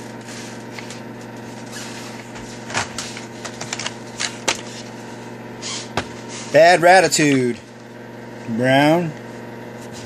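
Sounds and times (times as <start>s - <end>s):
steady hum: 0.0s - 10.0s.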